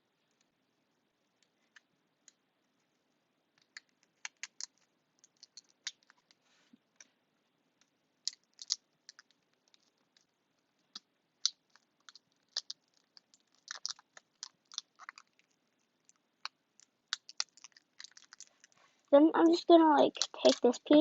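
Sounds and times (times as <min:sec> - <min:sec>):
tape crackling and clicking: 0:03.6 - 0:07.1, 0:07.8 - 0:21.0.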